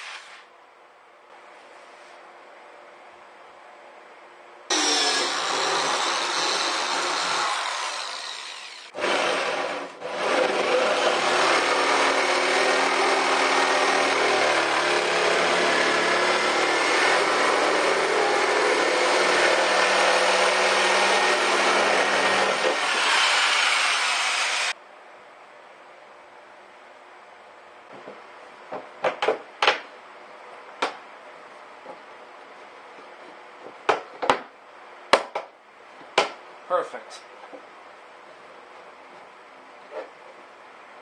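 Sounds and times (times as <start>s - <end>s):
power tool cutting: 4.7s - 24.8s.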